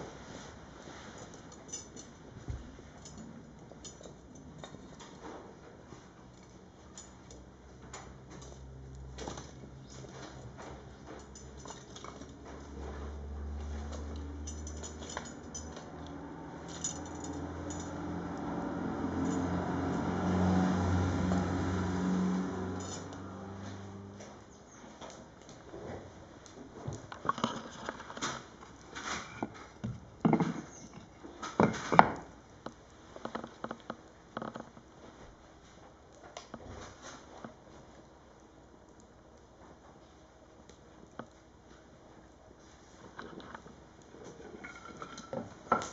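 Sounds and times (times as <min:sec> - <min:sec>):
firewood crackling and popping: 0:24.2 - 0:45.9.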